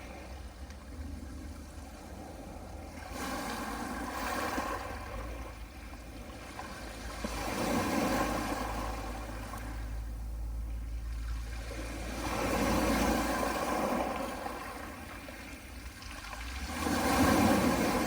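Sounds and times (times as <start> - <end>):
waves washing onto pebble beach: 3.0 - 5.4, 11.5 - 18.0.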